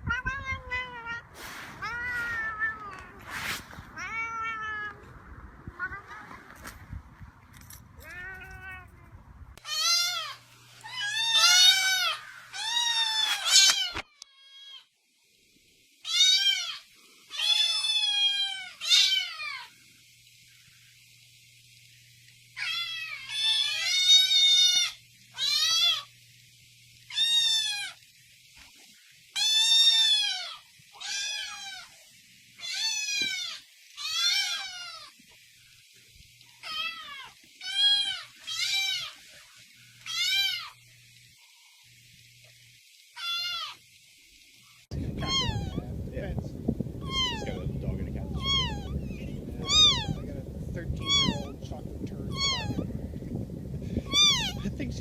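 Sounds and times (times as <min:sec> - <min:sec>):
cat meowing: 0:01.8 - 0:03.2, 0:04.0 - 0:05.0, 0:08.0 - 0:09.0, 0:09.6 - 0:14.8, 0:16.1 - 0:19.7, 0:22.6 - 0:26.1, 0:32.6 - 0:35.1, 0:36.6 - 0:39.2, 0:40.1 - 0:40.8, 0:43.2 - 0:43.8, 0:45.1 - 0:45.8, 0:47.0 - 0:50.2, 0:51.0 - 0:51.5, 0:52.3 - 0:52.8, 0:54.0 - 0:54.6.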